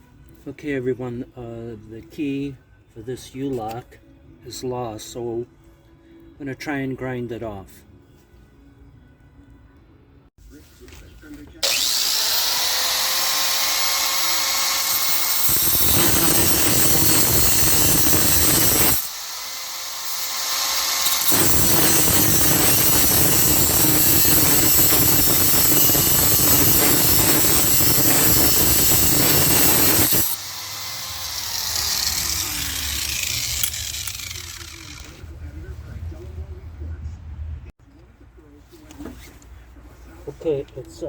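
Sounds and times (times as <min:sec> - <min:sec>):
grinder cutting metal: 0:11.6 - 0:35.2
grinder motor whine: 0:11.6 - 0:35.2.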